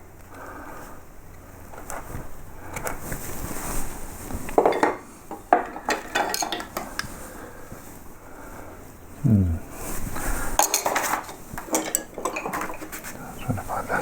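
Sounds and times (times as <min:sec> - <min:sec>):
steel chisels clinking together: 0:04.6 - 0:07.1, 0:10.6 - 0:13.0.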